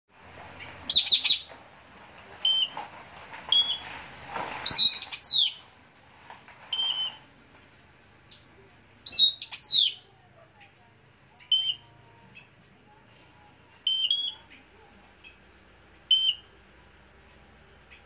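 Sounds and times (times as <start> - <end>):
songbird chirping: 0.5 - 1.6, 2.2 - 2.9, 3.5 - 4.0, 4.6 - 5.7, 6.7 - 7.4, 8.2 - 18.0
bird call notes: 6.7 - 7.3, 9.1 - 10.0, 11.4 - 12.5, 13.9 - 14.5, 16.1 - 16.5.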